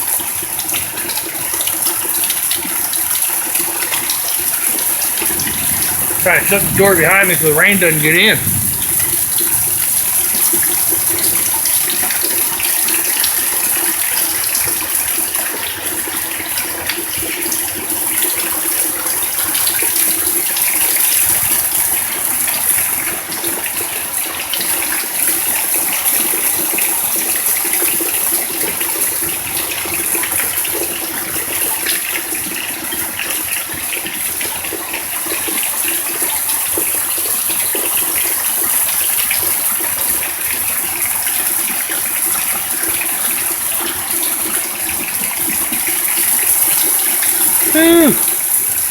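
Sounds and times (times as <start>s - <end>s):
heavy rain pouring: 0.2s - 48.9s.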